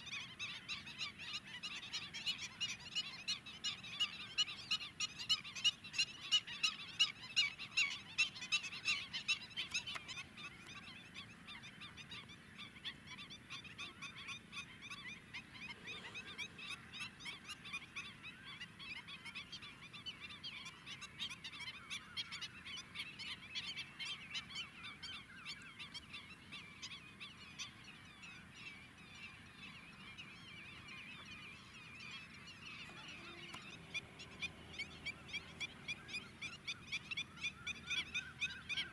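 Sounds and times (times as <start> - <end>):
flamingos honking: 32.7 - 38.8.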